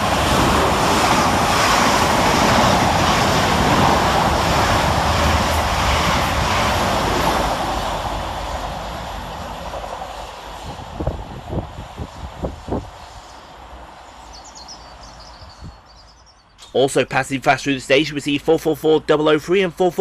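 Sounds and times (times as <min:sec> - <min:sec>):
train passing fast: 0:00.0 - 0:16.5.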